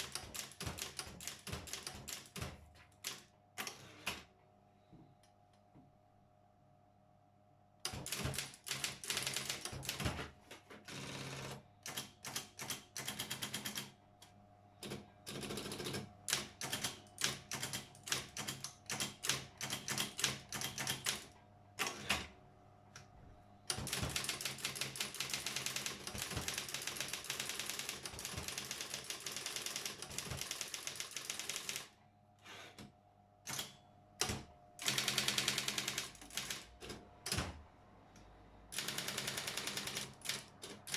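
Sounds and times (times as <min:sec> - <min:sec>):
electric typewriter typing: 0:00.0 - 0:04.3, 0:07.8 - 0:14.0, 0:14.8 - 0:22.3, 0:23.7 - 0:32.0, 0:33.5 - 0:37.6, 0:38.7 - 0:40.9.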